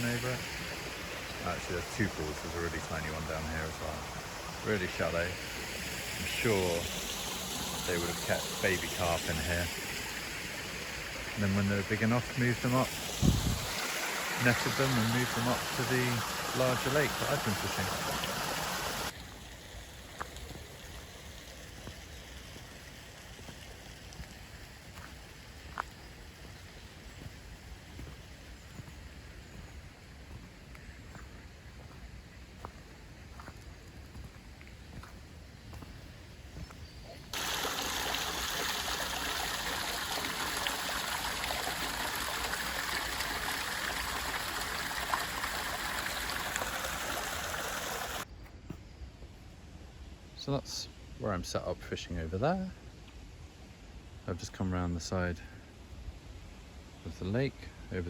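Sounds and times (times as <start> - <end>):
faint even hiss: 0.0 - 21.0
water rushing into pool: 0.0 - 24.3, 37.3 - 48.2.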